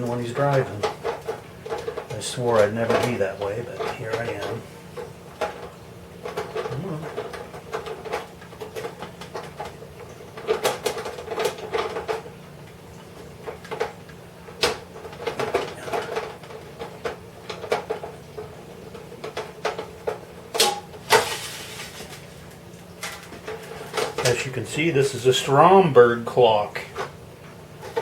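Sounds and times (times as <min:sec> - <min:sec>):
steady low hum: 0:00.0 - 0:07.4.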